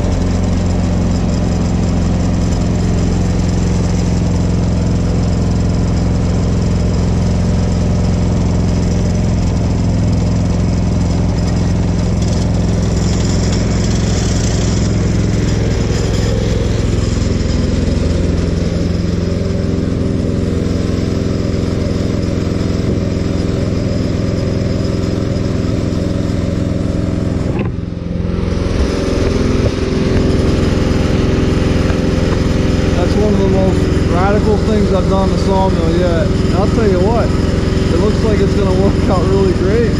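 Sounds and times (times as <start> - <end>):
gas engine running: 0.0 - 39.9
saw blade cutting wood: 11.4 - 20.2.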